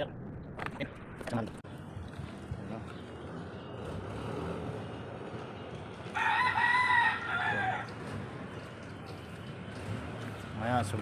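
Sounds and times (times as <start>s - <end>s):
rooster crowing: 6.1s - 7.9s.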